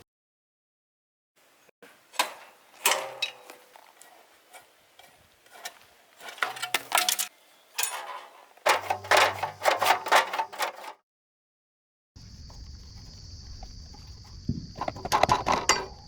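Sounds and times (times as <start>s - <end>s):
metal tools clinking: 2.0s - 10.9s, 14.8s - 16.0s.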